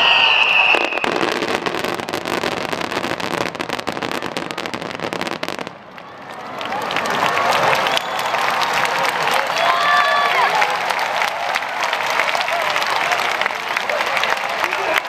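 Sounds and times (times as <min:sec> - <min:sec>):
fireworks crackling: 0:00.0 - 0:08.2.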